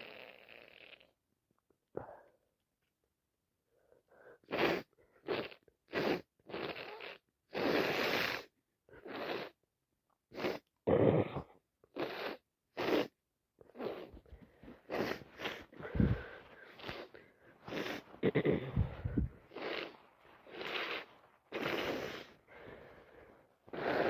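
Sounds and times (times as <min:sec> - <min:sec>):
congested nose breath bursts: 0:04.4 - 0:09.6, 0:10.3 - 0:10.7, 0:11.9 - 0:24.0.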